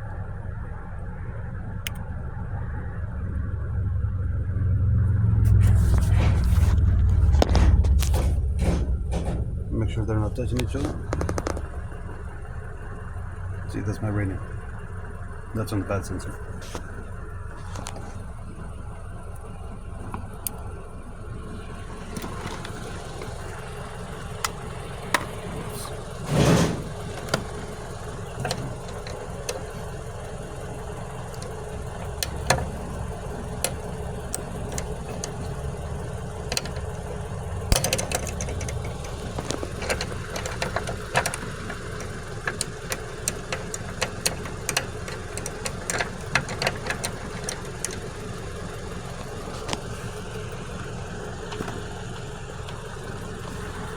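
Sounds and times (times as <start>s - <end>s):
engine idling: 0.0s - 53.9s
clicks and taps of tools: 24.4s - 25.8s, 28.4s - 29.7s, 31.3s - 33.0s, 36.4s - 36.9s, 37.7s - 48.0s, 51.5s - 51.8s.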